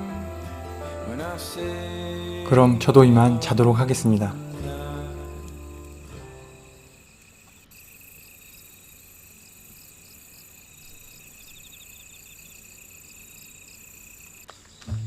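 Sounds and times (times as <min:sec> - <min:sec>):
crickets trilling: 0:00.0 - 0:15.0
insect chirps: 0:04.4 - 0:15.0.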